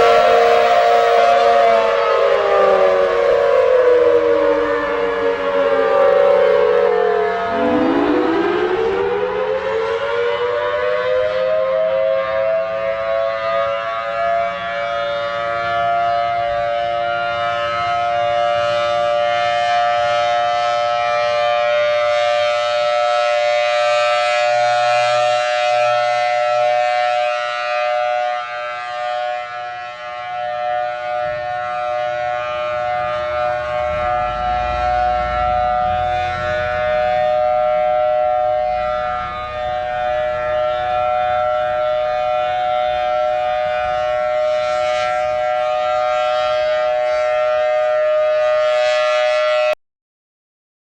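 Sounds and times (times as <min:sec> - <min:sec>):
air raid siren wailing: 0:00.0 - 0:13.8, 0:23.6 - 0:49.8.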